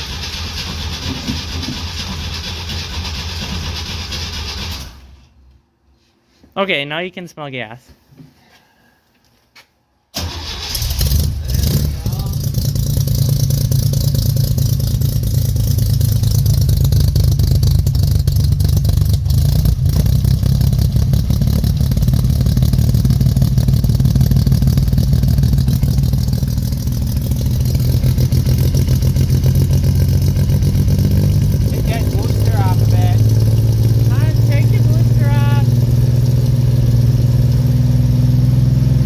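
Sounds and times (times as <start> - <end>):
car engine running: 11.0 - 39.0.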